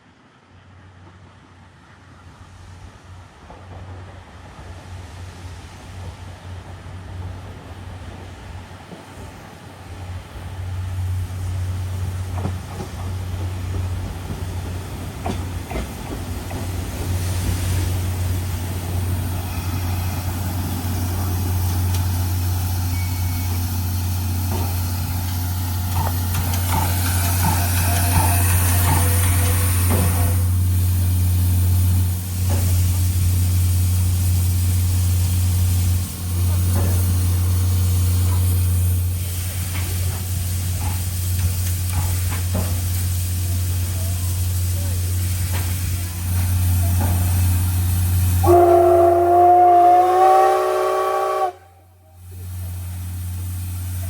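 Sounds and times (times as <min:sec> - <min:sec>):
train engine idling: 0:00.6 - 0:54.0
air hissing: 0:11.0 - 0:49.7.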